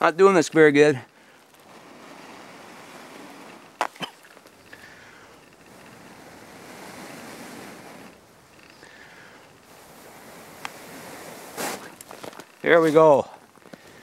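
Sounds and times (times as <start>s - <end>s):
breath blowing into tinder: 6.0s - 8.1s, 8.8s - 12.1s.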